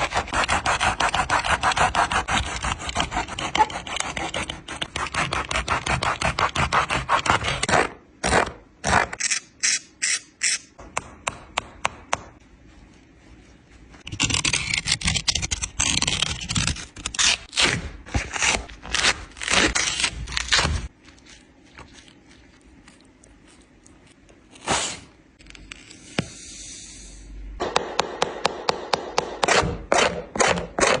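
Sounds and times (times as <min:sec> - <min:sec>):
sawing strokes cutting shoe: 0:00.0 - 0:10.7, 0:27.6 - 0:31.0.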